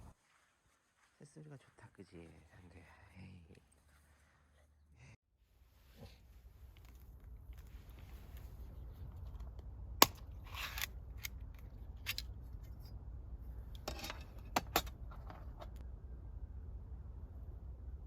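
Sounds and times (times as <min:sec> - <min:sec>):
low steady rumble: 0:04.8 - 0:18.0.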